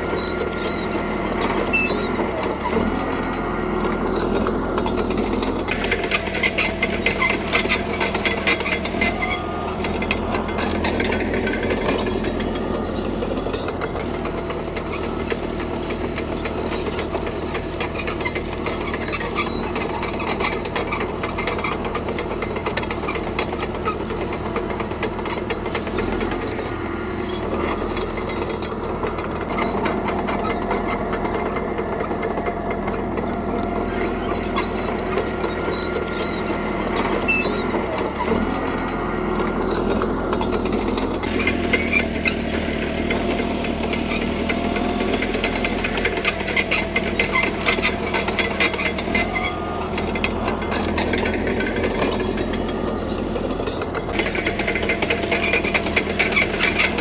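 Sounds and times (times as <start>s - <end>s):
bulldozer diesel engine under load: 0.0s - 57.0s.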